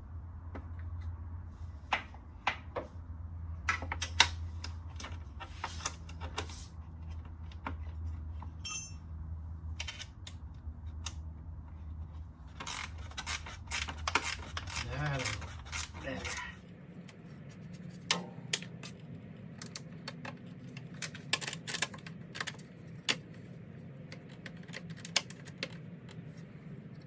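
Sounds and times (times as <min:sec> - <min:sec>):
steady low hum: 0:00.0 - 0:27.0
metal tools clinking: 0:08.6 - 0:09.0
ringing metallic clink: 0:08.6 - 0:09.1.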